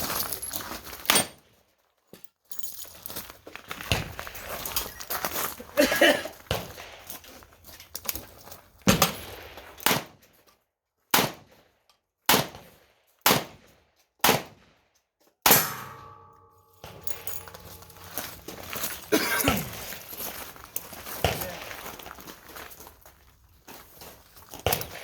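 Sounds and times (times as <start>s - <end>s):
metallic ringing: 15.6s - 19.0s.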